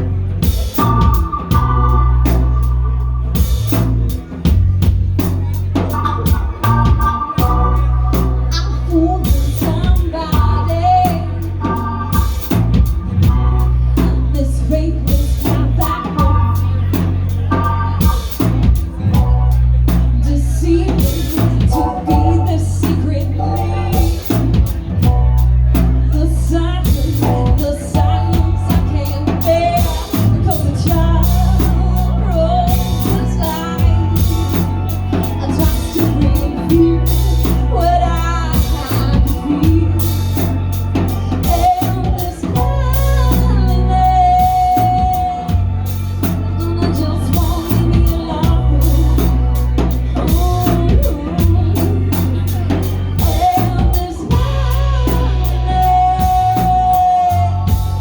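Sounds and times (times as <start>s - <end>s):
drum kit: 0.0s - 58.0s
heavy bass line: 0.0s - 58.0s
person singing: 5.8s - 58.0s.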